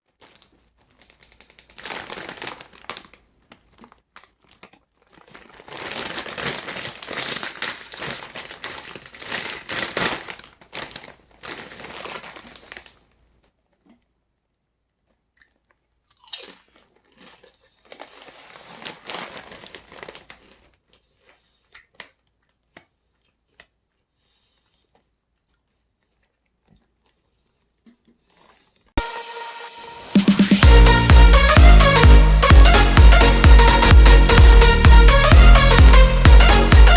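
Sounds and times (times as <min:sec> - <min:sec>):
crunching chips: 0:00.2 - 0:12.9, 0:15.4 - 0:28.8.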